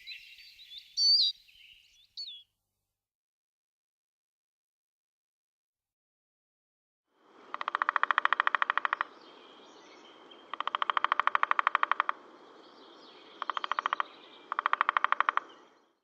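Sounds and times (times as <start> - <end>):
faint bird chirps: 0.0 - 2.5
bird rapid rattling calls: 10.4 - 12.3, 13.2 - 15.8.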